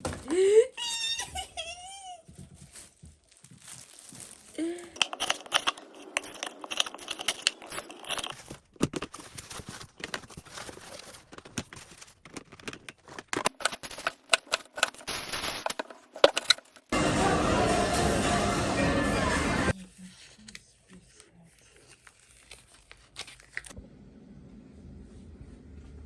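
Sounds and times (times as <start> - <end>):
packaging crinkling and rustling: 2.4 - 16.9, 21.7 - 23.8.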